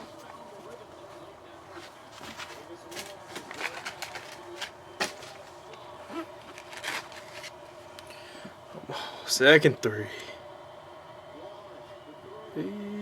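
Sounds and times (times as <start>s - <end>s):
trading cards clicking and rustling: 1.9s - 8.1s.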